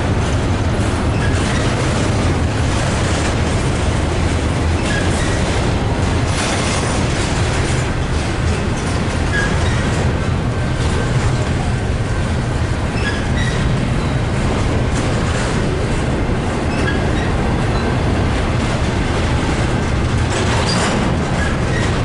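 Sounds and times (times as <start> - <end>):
train wheels rumbling on rails: 0.0 - 22.0
high wheel squeals: 9.3 - 9.9, 13.0 - 14.2.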